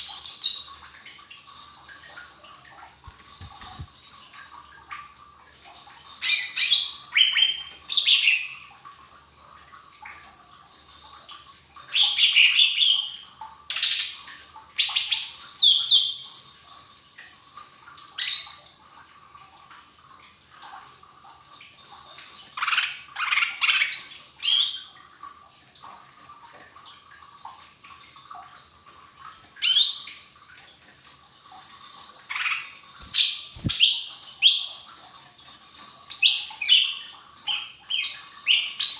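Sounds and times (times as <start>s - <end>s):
bird chirping and squawking: 3.1s - 4.7s, 32.3s - 34.7s.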